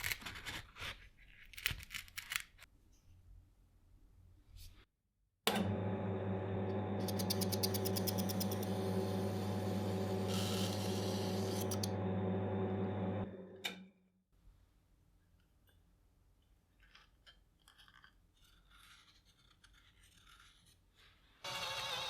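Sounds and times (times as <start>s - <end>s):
workshop machine humming: 5.5s - 13.8s.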